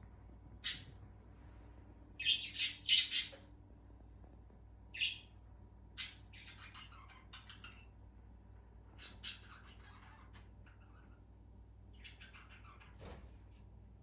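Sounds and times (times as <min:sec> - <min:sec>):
birds chirping: 0:02.2 - 0:03.4, 0:04.9 - 0:08.0, 0:08.9 - 0:13.0.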